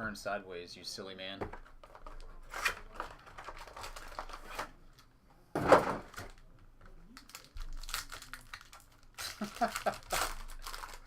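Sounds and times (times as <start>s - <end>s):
plastic wrapper crinkling: 1.7s - 5.0s, 7.1s - 11.0s
wrapper ripping: 7.2s - 11.0s.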